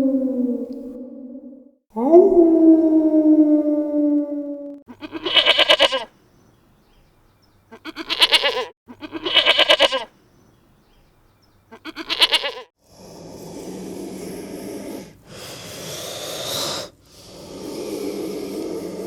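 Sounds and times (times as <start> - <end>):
animal bleating: 4.9 - 6.1, 7.7 - 10.1, 11.7 - 12.7.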